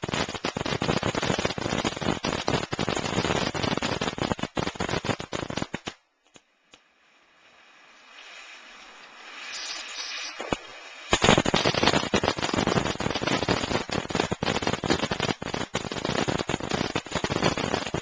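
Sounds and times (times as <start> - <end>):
firework crackling: 0.0 - 18.0
hiss: 6.7 - 13.9.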